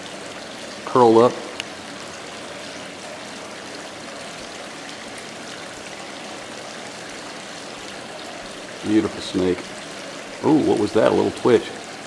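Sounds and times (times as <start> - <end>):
running water: 0.0 - 12.0.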